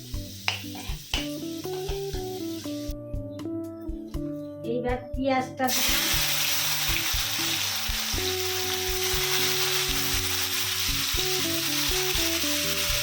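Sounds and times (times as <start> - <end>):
onions sizzling in oil: 0.0 - 3.0, 5.7 - 13.0.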